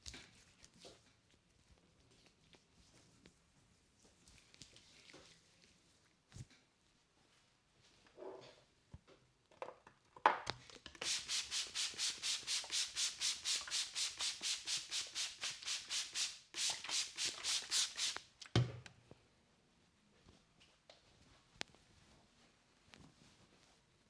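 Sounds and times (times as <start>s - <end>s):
scratchy rubbing on face: 11.0s - 18.2s.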